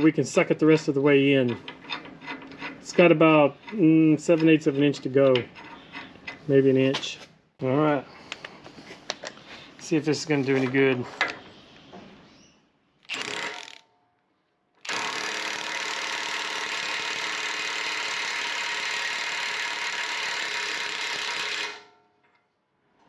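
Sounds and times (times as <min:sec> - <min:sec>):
impact wrench hammering: 0:13.1 - 0:13.8, 0:14.9 - 0:21.9.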